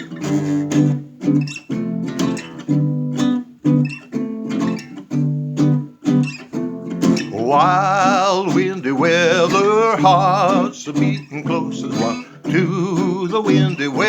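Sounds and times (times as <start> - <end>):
acoustic guitar strumming: 0.0 - 14.0.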